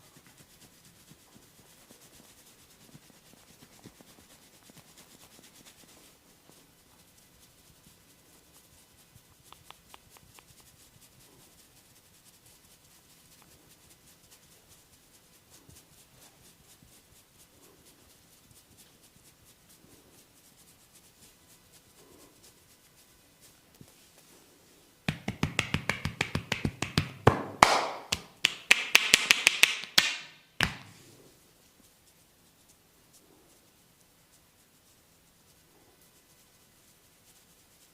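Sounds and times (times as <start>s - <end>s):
hands rubbing skin and hair: 0.0s - 37.9s
hands tapping and slapping on head: 25.1s - 31.0s.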